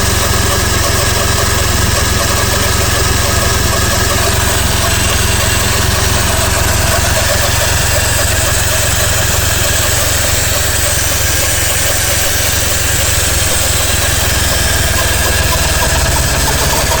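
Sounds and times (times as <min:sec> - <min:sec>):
car engine running: 0:00.0 - 0:17.0
constant hum: 0:00.0 - 0:17.0.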